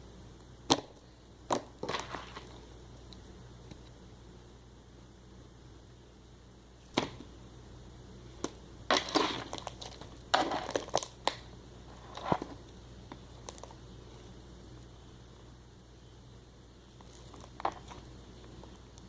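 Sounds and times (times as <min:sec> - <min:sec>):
slime popping and crackling: 0:08.4 - 0:11.5.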